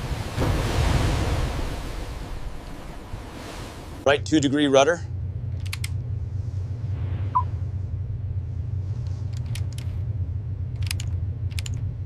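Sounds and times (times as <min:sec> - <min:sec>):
shipboard machinery rumble: 0:00.0 - 0:12.0
sharp clicks: 0:05.6 - 0:06.0, 0:09.3 - 0:09.9, 0:10.8 - 0:11.9.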